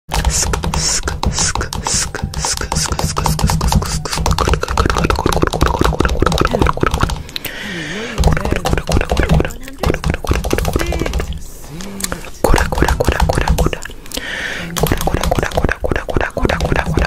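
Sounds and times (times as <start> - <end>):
stuttering electronic music: 1.4 - 7.1.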